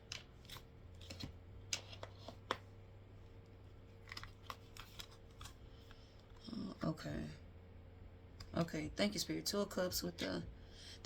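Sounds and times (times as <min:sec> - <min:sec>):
cards being shuffled: 0:00.0 - 0:02.7, 0:03.9 - 0:06.9.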